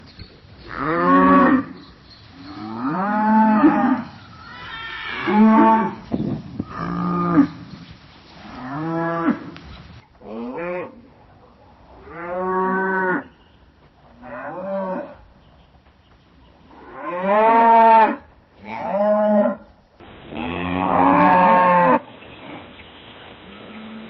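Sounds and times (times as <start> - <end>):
cow mooing: 0.7 - 1.8, 2.4 - 6.0, 20.3 - 22.0.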